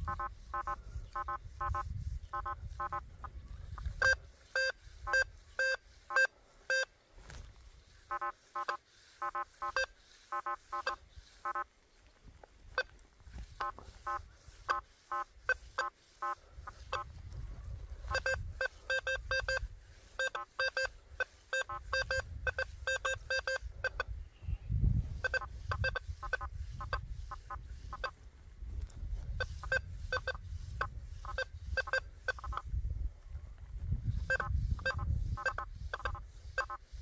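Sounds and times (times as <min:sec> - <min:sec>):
metal detector beeps: 0:00.0 - 0:03.0, 0:03.8 - 0:06.9, 0:08.1 - 0:11.6, 0:13.6 - 0:17.1, 0:18.0 - 0:24.1, 0:25.2 - 0:28.1, 0:29.3 - 0:32.6, 0:34.2 - 0:36.8.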